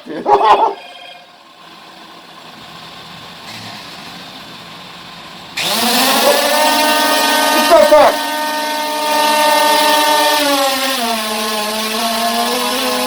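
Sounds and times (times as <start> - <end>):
drone motors whirring: 5.6 - 13.0.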